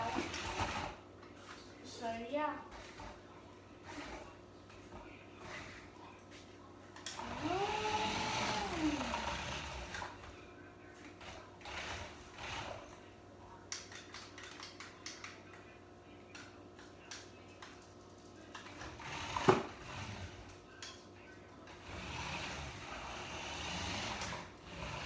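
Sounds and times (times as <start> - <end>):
electric motor whine winding down: 7.2 - 10.0.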